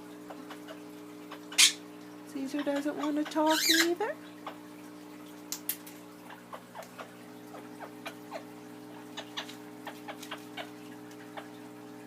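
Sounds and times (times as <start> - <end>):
parrots chirping and clicking: 0.2 - 1.9, 2.5 - 4.7, 5.5 - 11.6.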